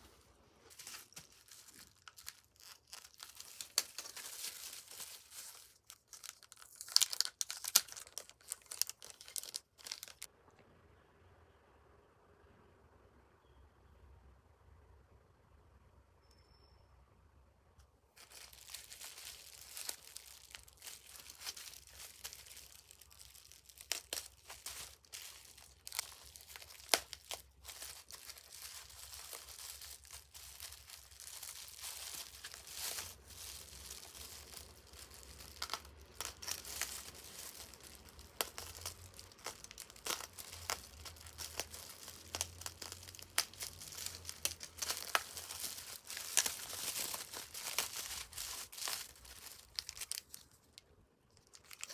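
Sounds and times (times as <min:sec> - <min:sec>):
packaging crinkling and tearing: 0:00.6 - 0:10.3, 0:18.2 - 0:51.9.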